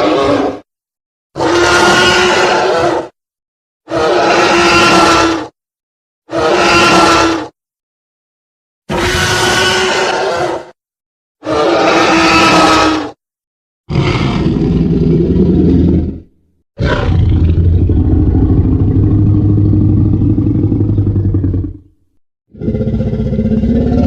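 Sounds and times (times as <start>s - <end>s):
dinosaur roars: 13.9s - 21.9s, 22.5s - 24.0s.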